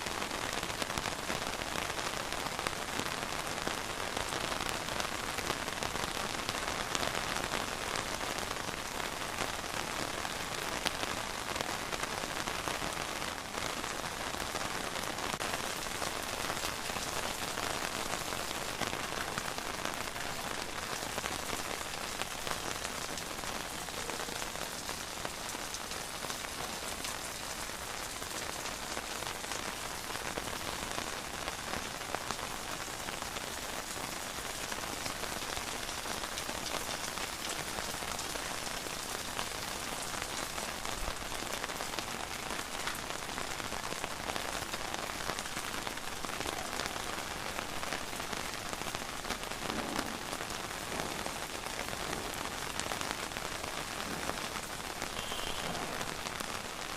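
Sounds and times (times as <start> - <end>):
steady rain pattering: 0.0 - 56.9.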